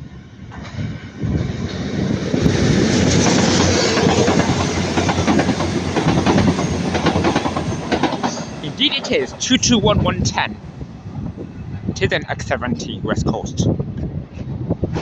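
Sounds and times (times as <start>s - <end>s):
diesel train passing: 0.0s - 15.0s
wheels clicking over rail joints: 3.2s - 10.2s.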